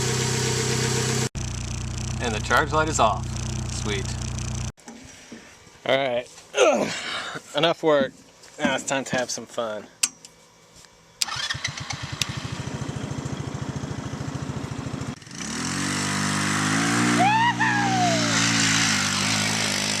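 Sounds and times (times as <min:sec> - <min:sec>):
engine cranking and running: 0:00.0 - 0:04.7, 0:11.2 - 0:15.7
rising and falling tone: 0:16.8 - 0:18.9.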